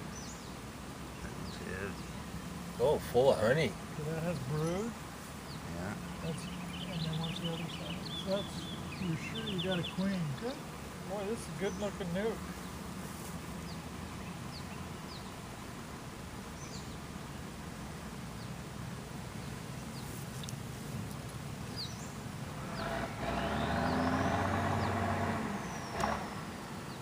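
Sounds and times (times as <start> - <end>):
low outdoor background: 0.0 - 27.0
vehicle passing by: 22.5 - 27.0.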